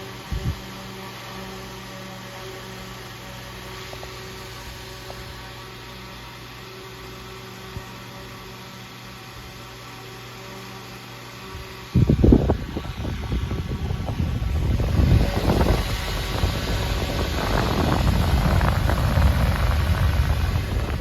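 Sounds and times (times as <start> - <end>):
table fan running: 0.0 - 21.0.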